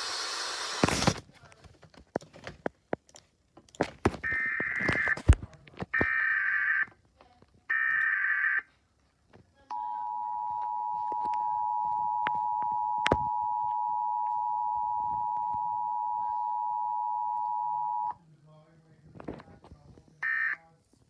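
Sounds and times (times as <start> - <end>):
screeching data tones: 0.0 - 1.2
burst of static with clicks: 0.0 - 1.5.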